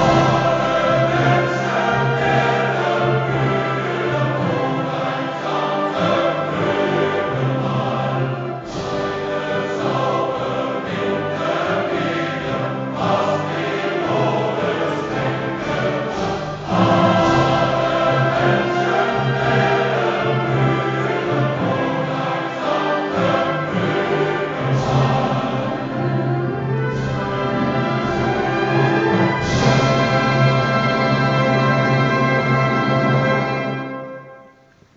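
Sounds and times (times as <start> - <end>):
choir singing: 0.0 - 34.4
orchestra playing: 0.0 - 34.5.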